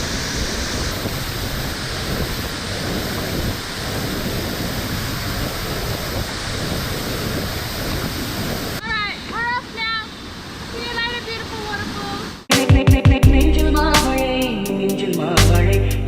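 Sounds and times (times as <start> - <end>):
wind buffeting microphone: 0.0 - 9.6
waterfall rushing: 0.0 - 12.6.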